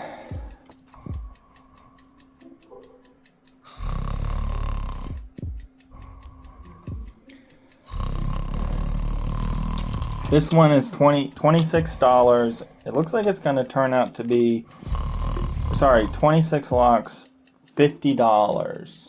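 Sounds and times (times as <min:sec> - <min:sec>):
person snoring loudly: 0:03.7 - 0:05.2, 0:07.9 - 0:10.4, 0:14.7 - 0:16.2.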